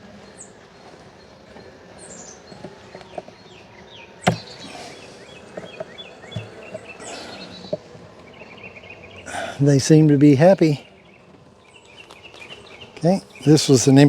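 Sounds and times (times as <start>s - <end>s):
bees humming: 0.4s - 11.0s.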